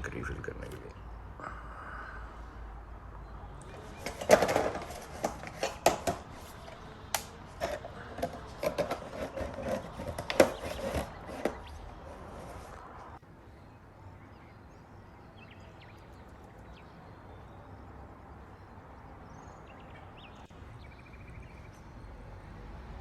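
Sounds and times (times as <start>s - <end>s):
parts clicking and tapping: 3.6s - 12.8s.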